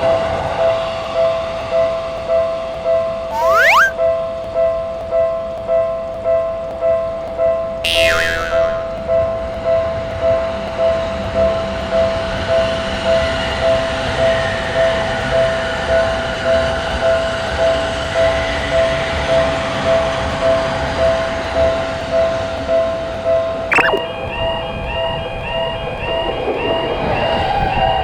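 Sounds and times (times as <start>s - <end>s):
level crossing alarm ding: 3.3s - 4.0s, 23.7s - 24.0s.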